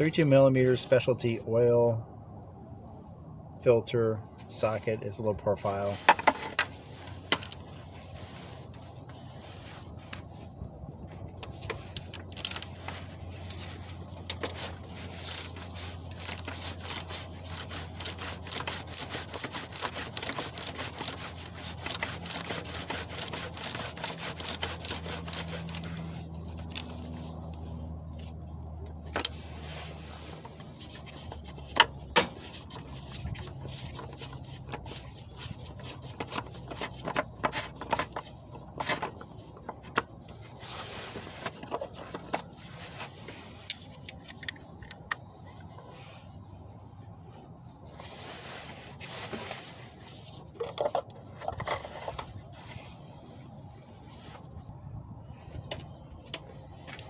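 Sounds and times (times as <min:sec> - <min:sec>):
low steady hum: 0:00.0 - 0:57.0
ratchet clicking: 0:07.3 - 0:07.6, 0:12.0 - 0:12.7, 0:15.2 - 0:26.0.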